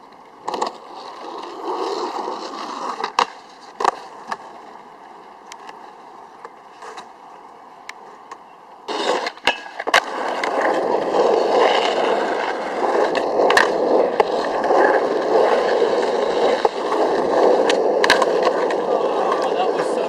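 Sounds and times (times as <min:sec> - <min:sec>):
skateboard wheels rolling: 0:00.0 - 0:20.0
skateboard hitting ground: 0:00.4 - 0:04.8, 0:08.9 - 0:20.0.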